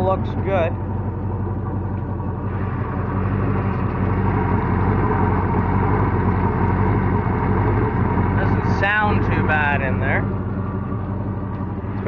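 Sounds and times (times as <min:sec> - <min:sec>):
boat engine idling: 0:00.0 - 0:12.0.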